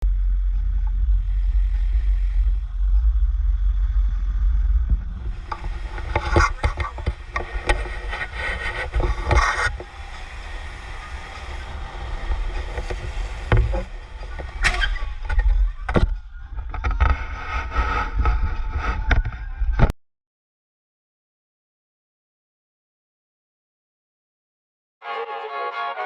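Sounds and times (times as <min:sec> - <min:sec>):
wheels rumbling on pavement: 0:00.0 - 0:18.8
wind buffeting microphone: 0:00.0 - 0:19.9
scraping and clattering knocks: 0:04.9 - 0:19.3.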